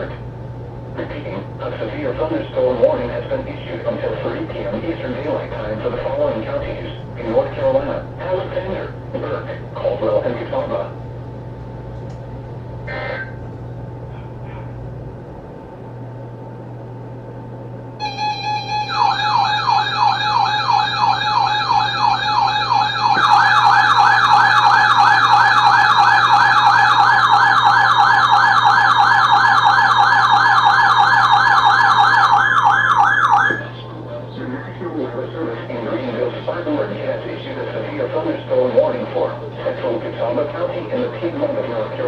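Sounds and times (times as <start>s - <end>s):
electronic alert siren: 18.0s - 33.7s.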